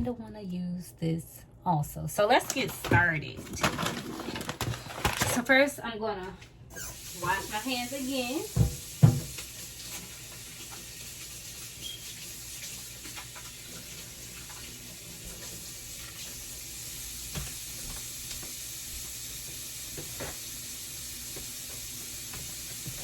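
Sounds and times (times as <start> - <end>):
tap running into sink: 8.5 - 11.0, 17.2 - 18.6.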